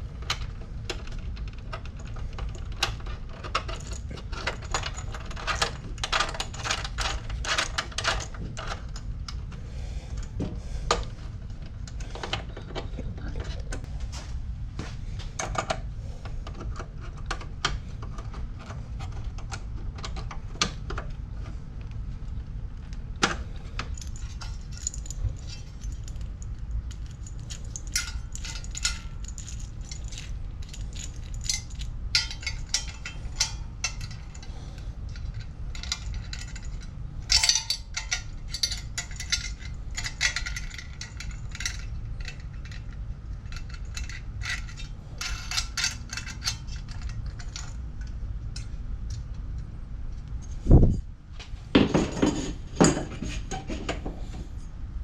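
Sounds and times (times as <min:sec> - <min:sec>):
steady low rumble: 0:00.0 - 0:51.8
metal parts and tools clinking: 0:00.2 - 0:09.4, 0:23.7 - 0:49.4.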